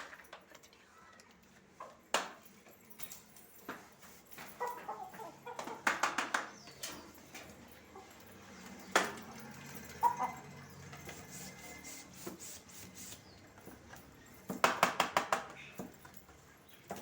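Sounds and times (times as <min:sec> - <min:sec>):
sharp taps and knocks: 0:04.7 - 0:07.0, 0:14.4 - 0:16.0.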